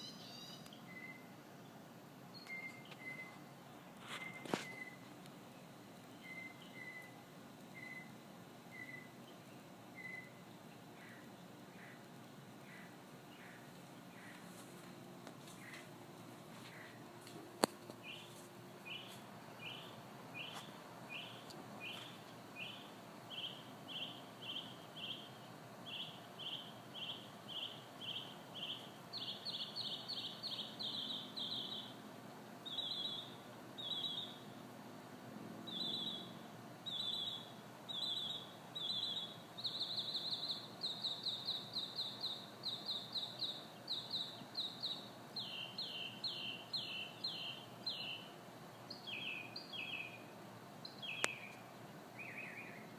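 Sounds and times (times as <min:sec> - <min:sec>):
songbird whistling: 0:00.0 - 0:01.3, 0:02.3 - 0:03.4, 0:04.1 - 0:05.0, 0:06.1 - 0:08.1, 0:08.7 - 0:09.2, 0:10.0 - 0:10.4, 0:35.7 - 0:48.3, 0:48.9 - 0:50.2, 0:50.8 - 0:51.6, 0:52.2 - 0:52.8.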